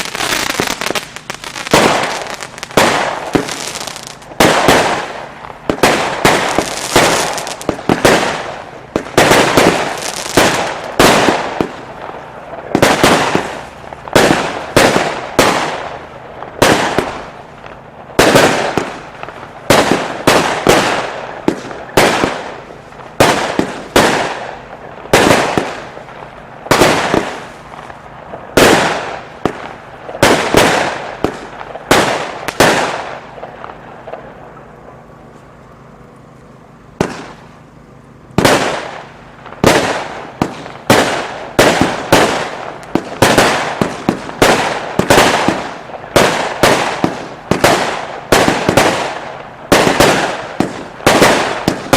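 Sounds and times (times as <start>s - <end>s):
firework bangs: 0.0s - 51.9s.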